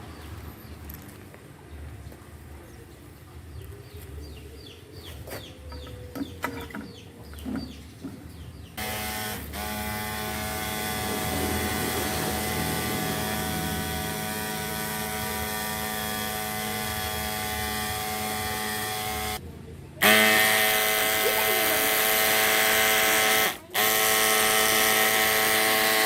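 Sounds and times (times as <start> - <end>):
water pump motor whining: 8.8 - 19.4, 20.0 - 26.0.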